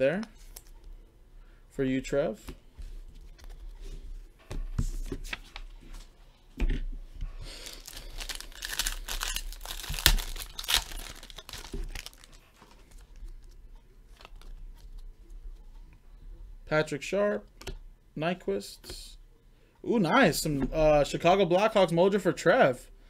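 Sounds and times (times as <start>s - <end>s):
wrapper tearing and crinkling: 7.5s - 13.0s.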